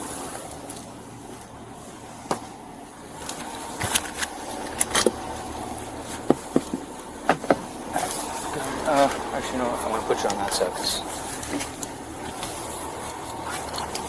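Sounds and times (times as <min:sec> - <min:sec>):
steady low hum: 0:00.0 - 0:14.0
sharp clicks and knocks: 0:06.2 - 0:07.7.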